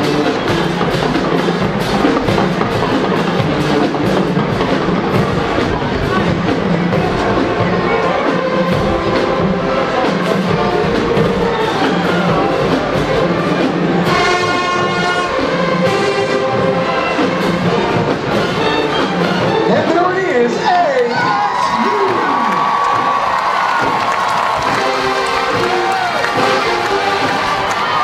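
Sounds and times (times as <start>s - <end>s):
marching band playing: 0.0s - 28.0s
held high brass chord: 14.0s - 19.6s, 24.3s - 28.0s.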